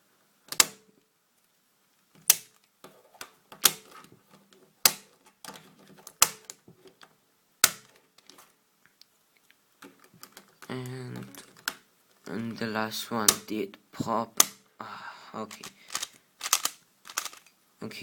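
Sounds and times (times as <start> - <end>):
pieces rattling: 15.5 - 17.5
plastic puzzle cube clicking: 15.5 - 17.5.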